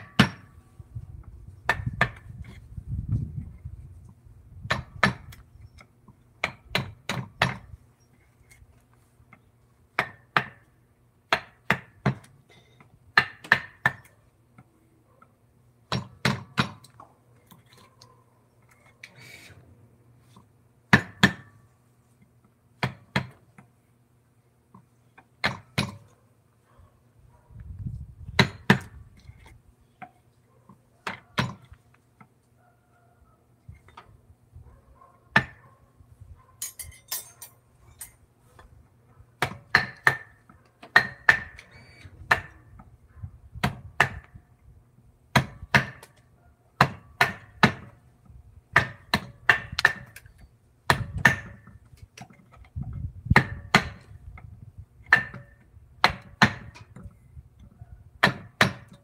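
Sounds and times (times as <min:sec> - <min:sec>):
mallet striking chisel: 0:39.4 - 0:40.3, 0:41.0 - 0:41.6, 0:46.8 - 0:47.9, 0:48.8 - 0:50.2, 0:58.2 - 0:59.0.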